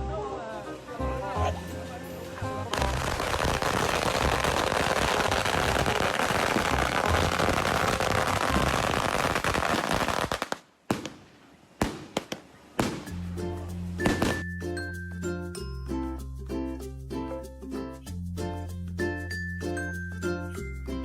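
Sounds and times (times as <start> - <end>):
rapid crackling pops: 2.8 - 13.2.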